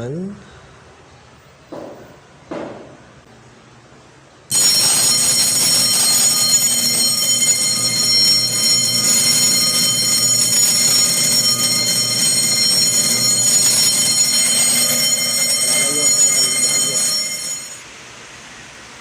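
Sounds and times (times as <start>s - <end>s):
electric alarm bell ringing: 4.5s - 17.8s.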